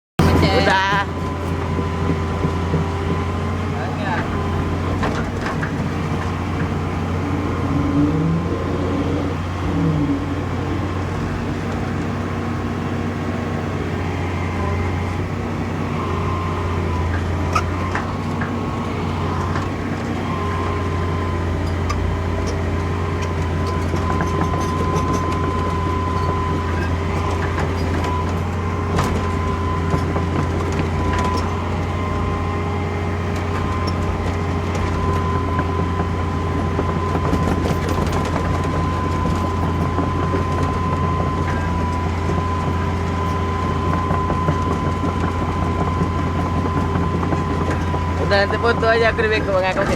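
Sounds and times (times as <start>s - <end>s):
excavator diesel engine running: 0.2s - 49.9s
thin steady whine: 14.0s - 49.9s.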